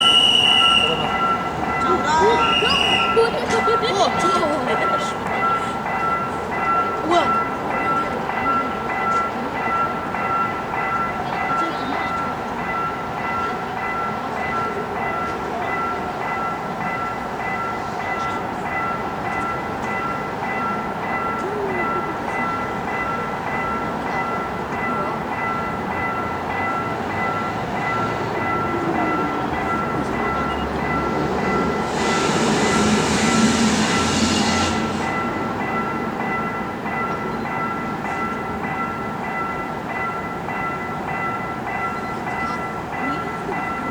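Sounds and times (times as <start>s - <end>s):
level crossing warning bell: 0.0s - 43.9s
train running: 0.0s - 43.9s
loud rushing hiss: 31.8s - 35.5s.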